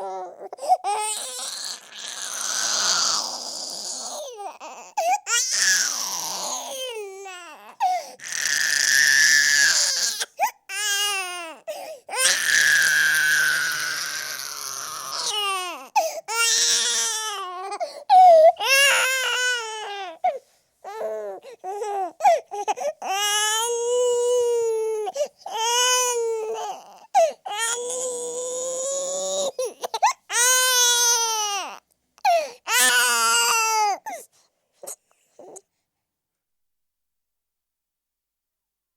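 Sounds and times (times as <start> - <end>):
baby crying: 0.0 - 35.6
baby gasping breaths: 7.8 - 8.2, 11.6 - 12.1, 16.0 - 16.3, 17.7 - 18.4, 32.2 - 32.7
baby catching breath: 11.7 - 12.0.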